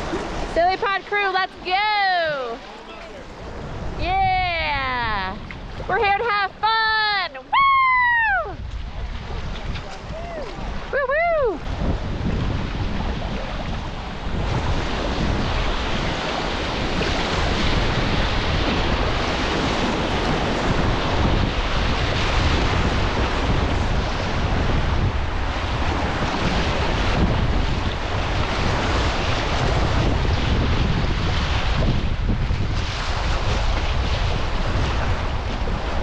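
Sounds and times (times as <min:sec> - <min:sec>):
river whitewater rushing: 0:00.0 - 0:08.5
wind buffeting microphone: 0:00.0 - 0:36.0.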